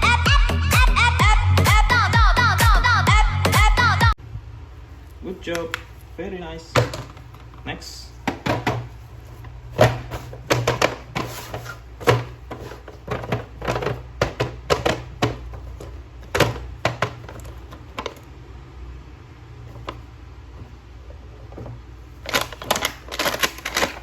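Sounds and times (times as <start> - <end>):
plastic packaging clicking and tapping: 9.8 - 18.2, 22.2 - 24.0.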